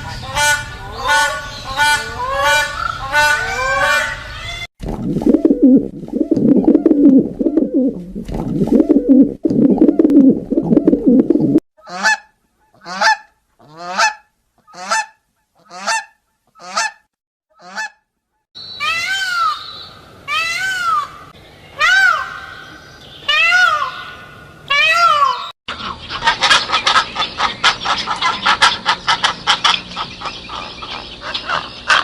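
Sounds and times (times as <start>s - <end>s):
geese honking and cackling: 0.0s - 4.7s, 23.3s - 32.0s.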